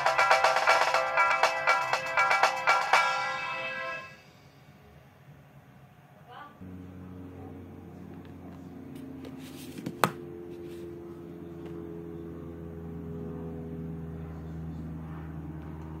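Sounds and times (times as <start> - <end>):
synthesized ringtone chords: 0.0 - 4.2.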